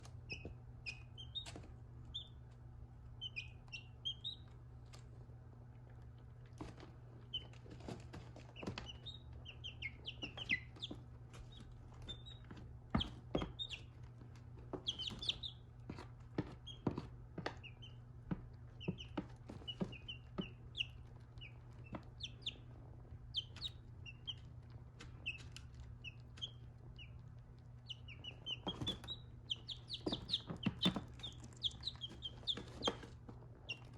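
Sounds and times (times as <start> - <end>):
chicks peeping: 0.0 - 5.1, 6.0 - 33.9
beaks clicking on kibble: 18.6 - 33.9.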